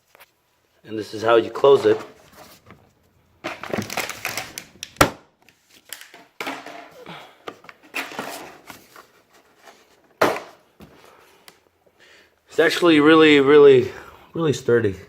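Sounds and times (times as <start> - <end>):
plastic case rattling: 3.4 - 4.8.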